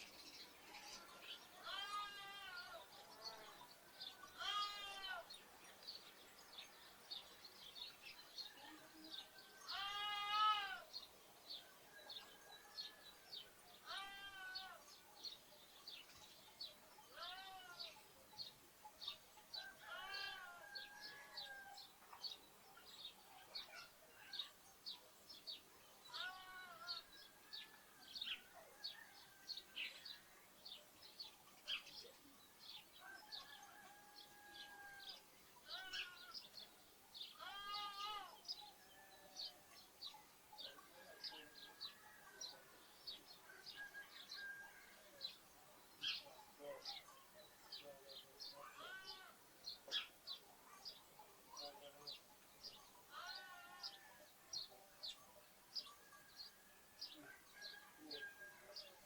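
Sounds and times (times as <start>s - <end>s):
sparrows chirping: 0.0s - 59.0s
lambs bleating: 1.6s - 2.8s, 4.4s - 5.2s, 9.7s - 10.8s, 13.9s - 14.8s, 37.4s - 38.4s.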